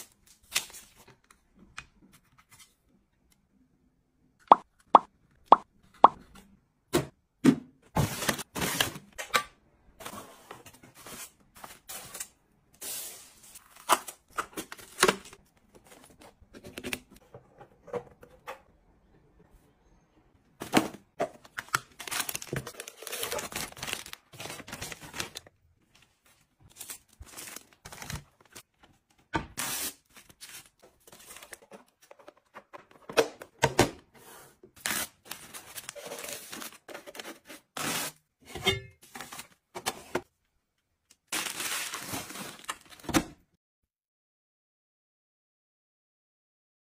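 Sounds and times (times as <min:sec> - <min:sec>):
packaging rustling and crinkling: 0:21.4 - 0:28.9, 0:41.3 - 0:43.1.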